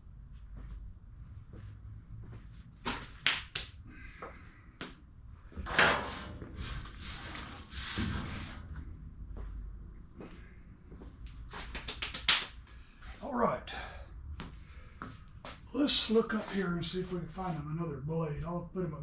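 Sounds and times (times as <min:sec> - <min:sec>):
workshop knocks and clatters: 0:05.5 - 0:09.6.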